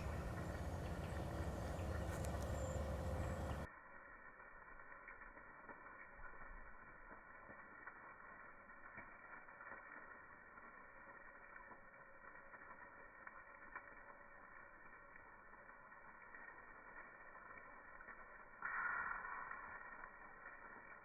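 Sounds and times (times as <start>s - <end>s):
burst of noise: 17.2s - 21.0s.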